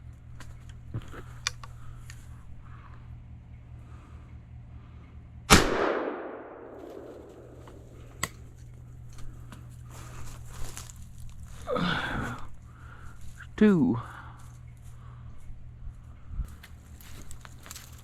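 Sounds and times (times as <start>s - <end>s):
shotgun shot: 5.5s - 7.6s.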